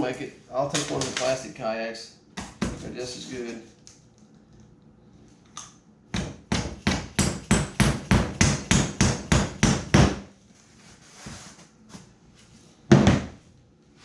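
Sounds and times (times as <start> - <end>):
hammer striking rhythmically: 6.2 - 10.2.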